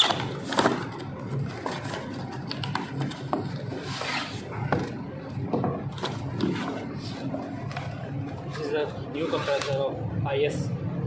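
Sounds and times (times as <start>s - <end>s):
box and wrapping scraping: 0.0s - 4.6s.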